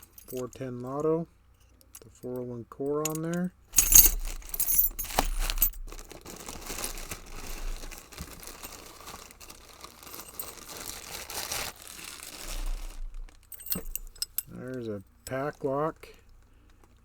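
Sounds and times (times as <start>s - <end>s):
wrapping crinkling and rustling: 3.8s - 14.4s.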